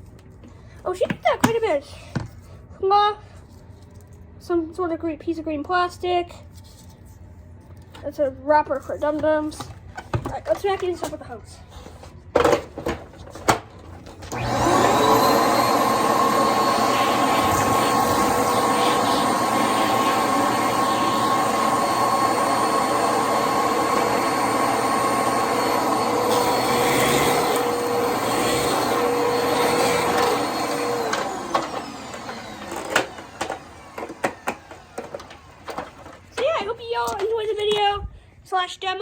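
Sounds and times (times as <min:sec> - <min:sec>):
vacuum cleaner motor whine: 0:14.2 - 0:36.3.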